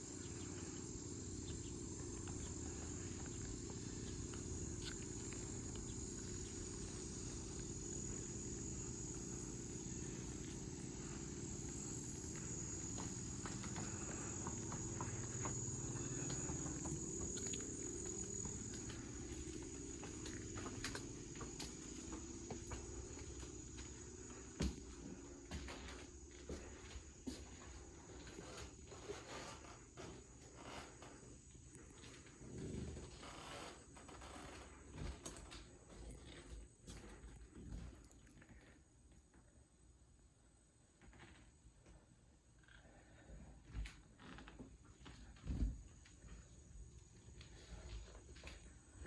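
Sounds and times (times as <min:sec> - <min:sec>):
crickets trilling: 0:00.0 - 0:38.9.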